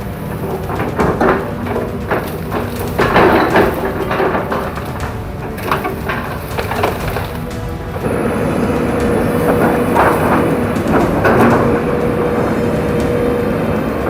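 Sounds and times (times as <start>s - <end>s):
excavator engine drone: 0.0s - 14.0s
bamboo cracking and snapping: 0.3s - 8.1s.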